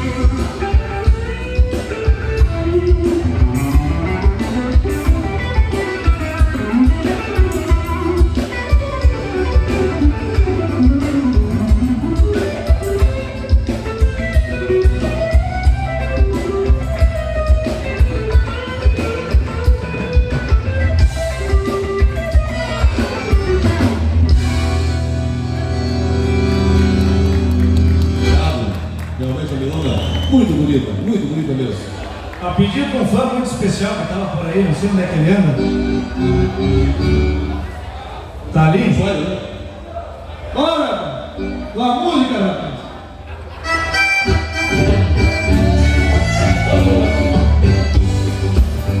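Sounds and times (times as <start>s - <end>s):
steady drum beat: 0.0s - 25.1s, 45.2s - 49.0s
guitar: 0.0s - 39.4s, 41.0s - 49.0s
wandering melody: 35.3s - 37.7s, 43.6s - 49.0s.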